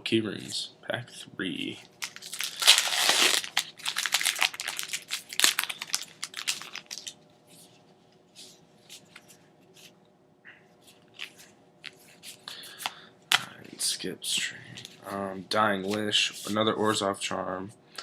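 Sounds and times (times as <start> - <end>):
cards rustling and ticking: 2.0 - 7.2
foil wrapper tearing and crinkling: 2.0 - 7.2.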